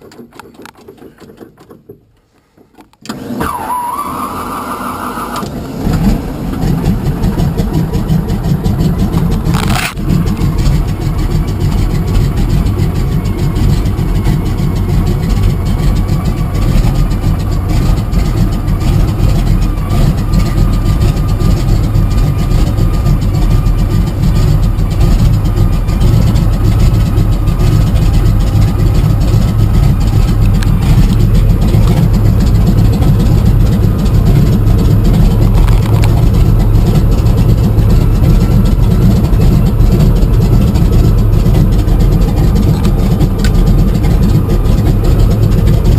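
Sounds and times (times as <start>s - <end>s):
plane piston engine running: 6.0s - 45.9s.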